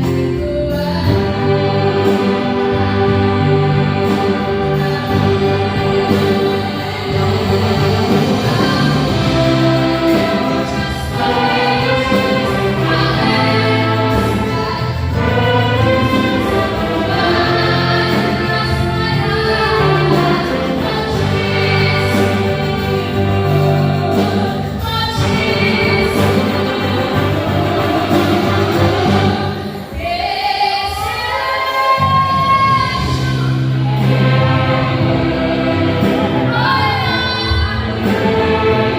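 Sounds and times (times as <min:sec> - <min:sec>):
steady bass line: 0:00.0 - 0:29.6
gospel band playing: 0:00.0 - 0:38.9
voices singing: 0:00.0 - 0:38.9.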